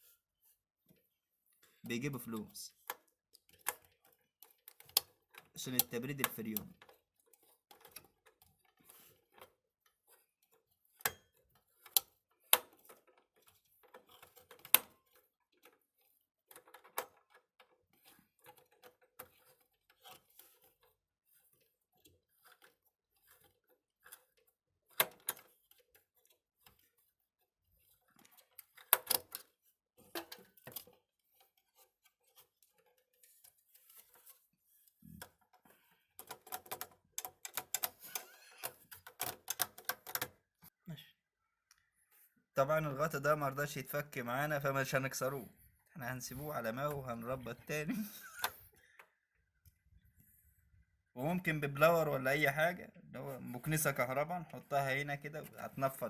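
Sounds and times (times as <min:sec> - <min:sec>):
metal clicks and knocks: 0:28.1 - 0:34.3, 0:35.2 - 0:40.4.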